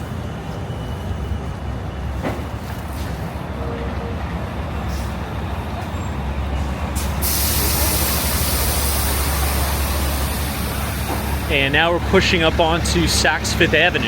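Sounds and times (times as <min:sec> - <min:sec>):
street traffic rumble: 0:00.0 - 0:14.0
air brakes hissing: 0:04.9 - 0:05.3, 0:06.6 - 0:14.0.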